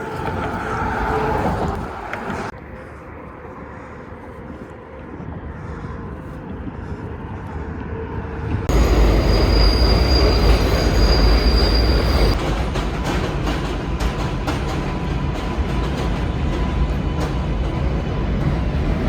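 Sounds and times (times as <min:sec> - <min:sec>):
train rumbling on rails: 0:00.0 - 0:19.0
high-pitched wheel squeal: 0:08.7 - 0:12.4.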